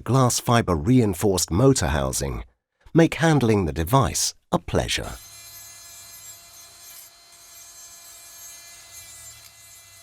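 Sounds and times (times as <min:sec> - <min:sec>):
rotary tool grinding: 0:05.2 - 0:10.0.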